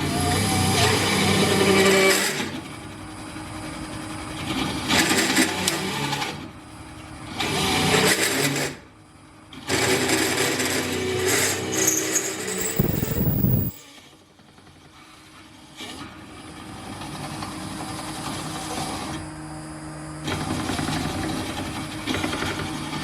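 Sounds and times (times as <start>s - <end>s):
drill press cutting steel: 11.6s - 13.9s.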